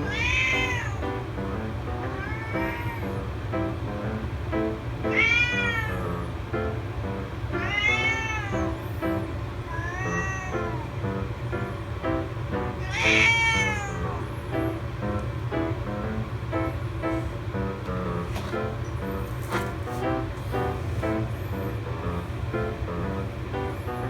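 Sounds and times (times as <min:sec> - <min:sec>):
kitten meowing: 0:00.0 - 0:01.0, 0:02.2 - 0:03.1, 0:05.1 - 0:06.2, 0:07.6 - 0:08.8, 0:09.7 - 0:10.9, 0:12.8 - 0:14.2.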